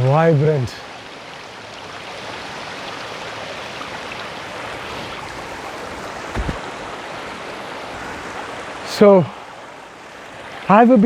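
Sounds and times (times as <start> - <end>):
waterfall rushing: 2.2 - 10.7
low thump: 5.5 - 6.9.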